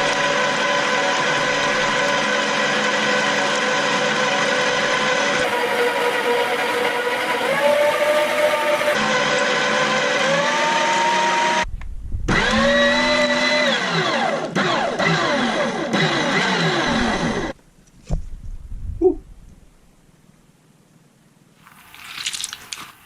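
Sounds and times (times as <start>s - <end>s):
electric meat grinder motor whirring: 0.0s - 11.7s, 12.3s - 17.6s.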